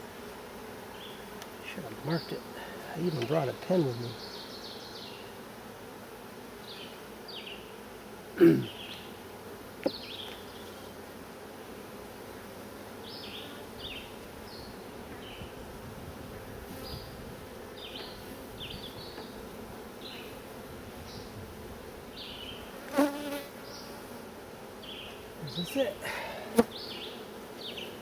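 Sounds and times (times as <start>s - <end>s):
bees humming: 0.0s - 28.0s.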